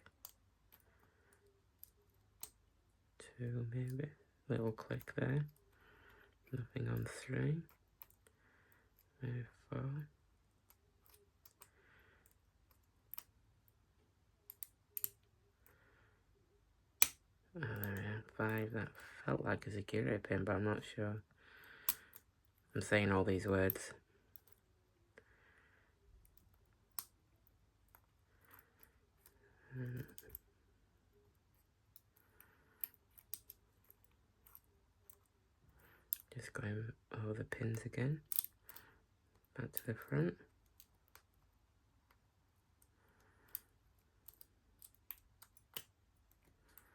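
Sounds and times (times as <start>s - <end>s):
lock pick clicking in padlock: 14.5s - 15.2s, 38.3s - 38.6s
lock pick clicks: 14.5s - 15.3s, 38.3s - 38.8s, 43.5s - 46.4s.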